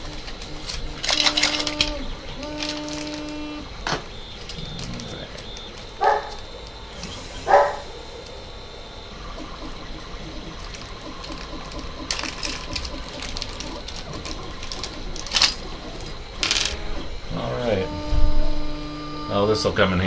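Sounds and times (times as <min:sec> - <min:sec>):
plastic packaging crinkling: 0:00.1 - 0:03.4, 0:10.6 - 0:16.1.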